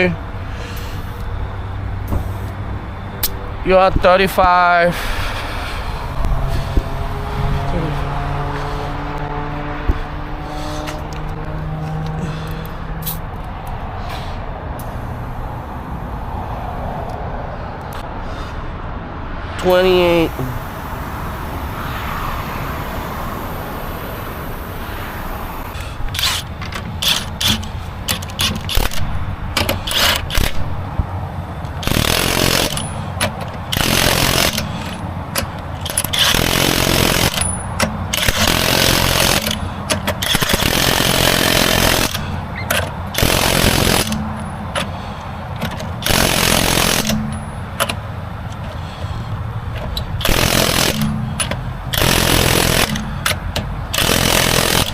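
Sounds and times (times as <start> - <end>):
steady low rumble: 0.0 - 29.6
impact wrench bursts: 25.7 - 30.8, 31.6 - 54.9.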